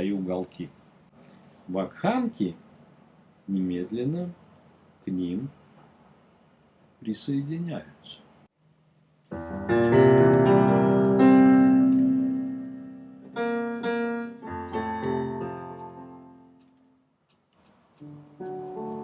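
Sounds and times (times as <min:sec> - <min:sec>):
piano chords: 0:09.3 - 0:16.9, 0:18.0 - 0:19.0.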